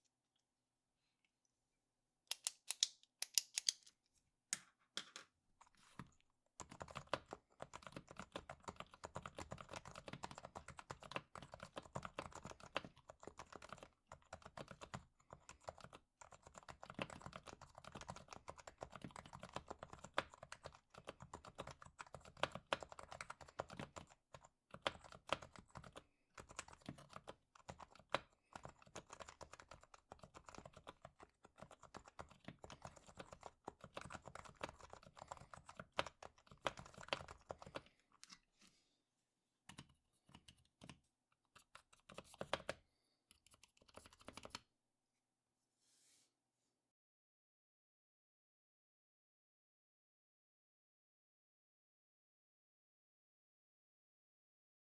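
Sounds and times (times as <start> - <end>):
pen clicking: 2.3 - 3.9
typing on a keyboard: 6.6 - 37.9, 39.7 - 41.0, 41.6 - 44.6.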